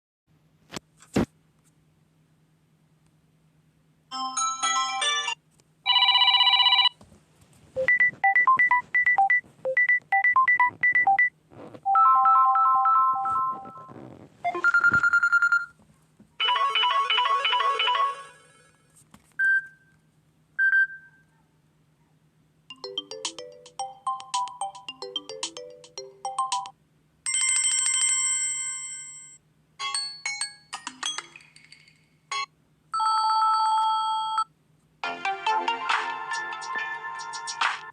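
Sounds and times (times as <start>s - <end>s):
tablet ringtone chimes: 11.9s - 13.8s, 22.7s - 26.7s.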